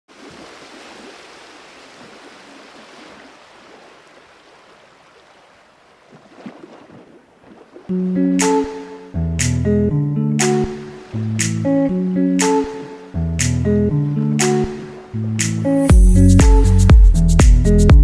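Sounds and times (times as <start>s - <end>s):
rushing water: 0.1s - 9.1s, 10.4s - 15.9s
loud music: 8.4s - 10.8s, 15.4s - 18.0s.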